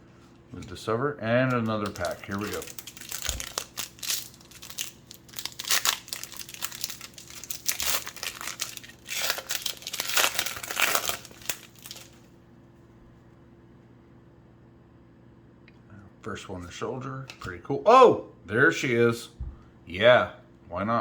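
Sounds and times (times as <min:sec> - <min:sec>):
faint steady hum: 0:00.0 - 0:21.0
wrapper tearing and crinkling: 0:01.6 - 0:12.3.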